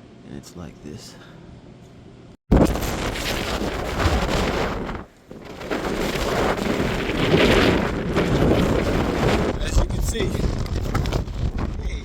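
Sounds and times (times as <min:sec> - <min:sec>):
wind blasting across microphone: 0:02.5 - 0:12.0.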